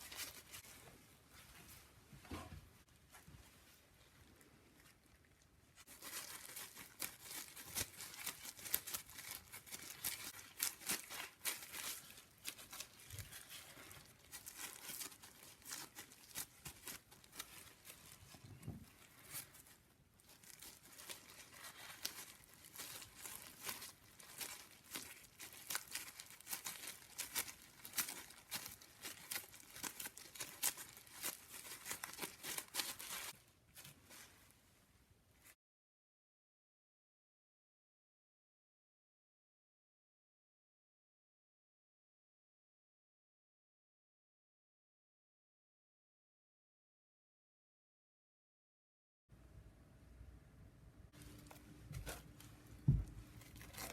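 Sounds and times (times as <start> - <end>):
rustling and crinkling: 0.0 - 35.6, 51.1 - 53.9.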